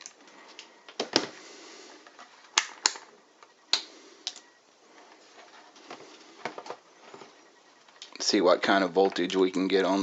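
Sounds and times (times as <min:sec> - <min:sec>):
multimeter probes clicking and tapping: 0:02.5 - 0:04.5.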